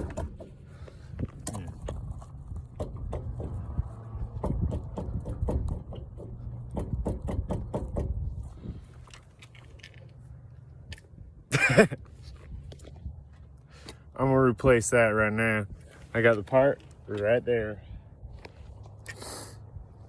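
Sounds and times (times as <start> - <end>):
car wheel clicking and clunking: 0.0 - 8.4.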